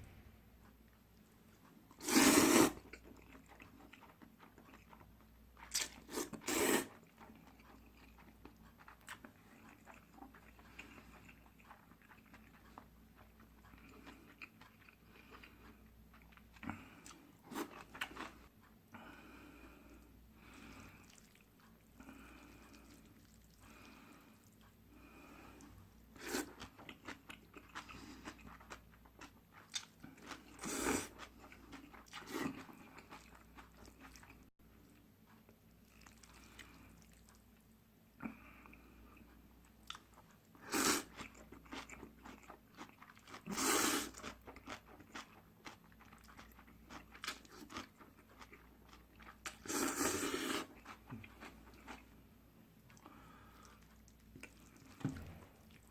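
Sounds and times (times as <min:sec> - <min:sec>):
person chewing noodles: 0:00.6 - 0:55.9
slurping: 0:02.0 - 0:03.7, 0:04.9 - 0:07.0, 0:49.2 - 0:52.0.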